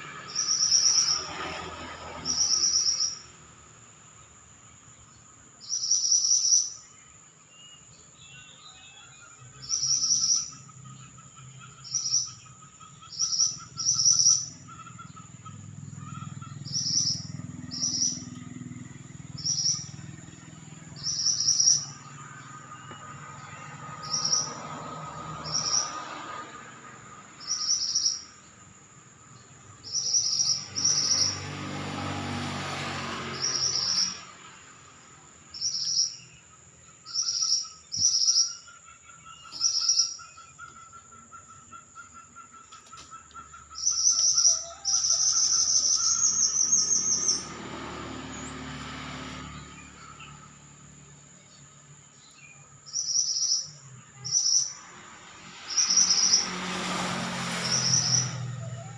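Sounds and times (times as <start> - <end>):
bird chirping and trilling: 0.0 - 3.4, 5.0 - 26.4, 27.4 - 28.6, 29.3 - 31.6, 33.2 - 34.8, 35.5 - 48.7, 51.4 - 58.9.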